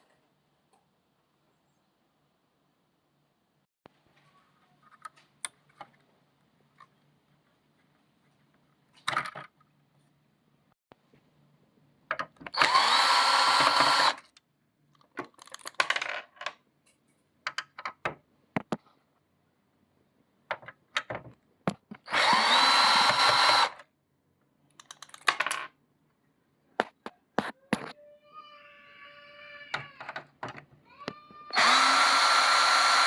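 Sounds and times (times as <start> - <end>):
electric screwdriver whine: 12.6 - 14.2, 22.1 - 23.8, 31.5 - 33.0
small parts clicking: 15.0 - 16.6, 24.7 - 25.7.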